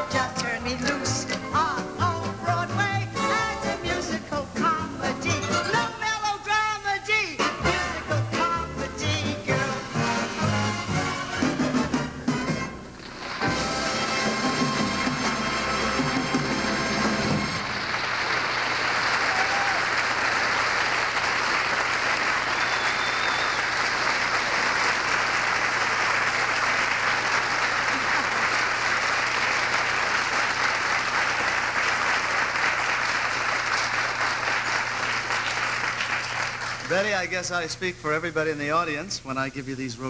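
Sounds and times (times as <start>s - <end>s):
studio audience applauding: 13.0s - 13.8s, 14.8s - 37.3s.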